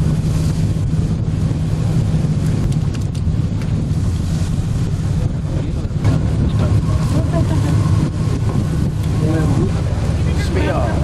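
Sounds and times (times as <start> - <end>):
low engine rumble: 0.0 - 11.0
wind buffeting microphone: 0.0 - 11.0.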